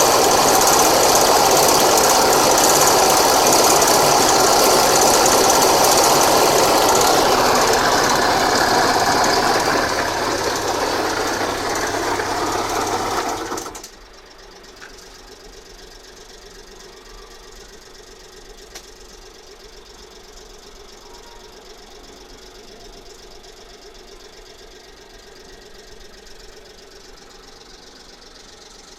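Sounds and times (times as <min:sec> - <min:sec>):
scooter engine running: 0:00.0 - 0:28.9.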